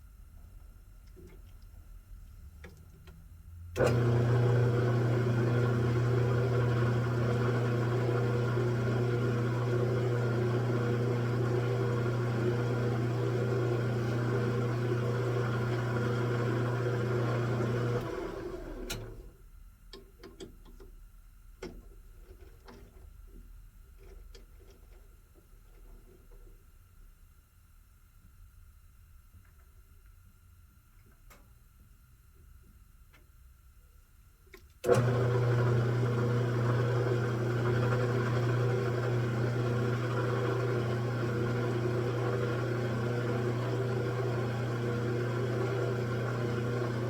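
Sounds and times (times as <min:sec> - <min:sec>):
lathe motor humming: 0:03.8 - 0:19.2, 0:34.9 - 0:47.0.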